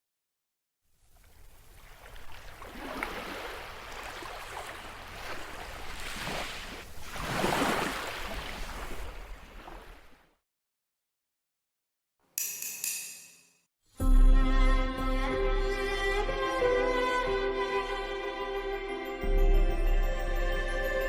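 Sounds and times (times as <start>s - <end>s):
ocean waves washing: 1.1s - 10.2s.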